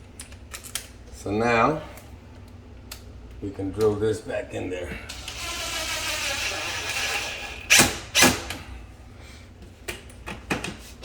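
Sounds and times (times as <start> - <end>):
power drill driving a screw: 5.1 - 8.6.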